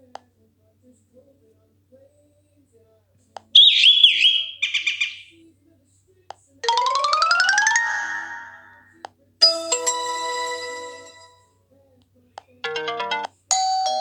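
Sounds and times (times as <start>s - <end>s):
phone ringtone and notification tones: 6.6s - 11.4s, 12.6s - 14.0s.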